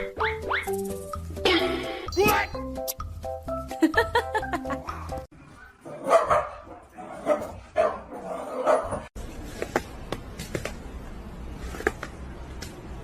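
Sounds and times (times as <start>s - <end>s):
dog barking: 5.5s - 9.1s.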